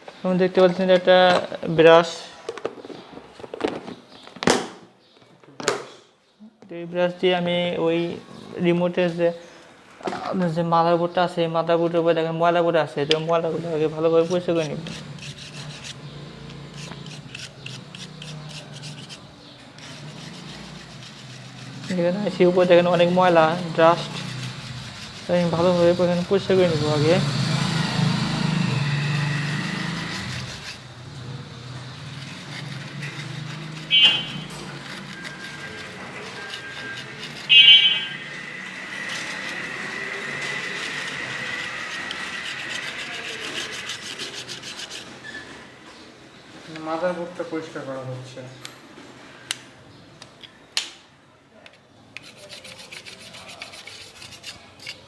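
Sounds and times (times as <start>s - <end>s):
brush scrubbing circuit board: 14.2s - 26.7s, 28.4s - 45.1s, 52.2s - 55.0s
thin high whine: 27.9s - 30.8s, 33.9s - 45.6s.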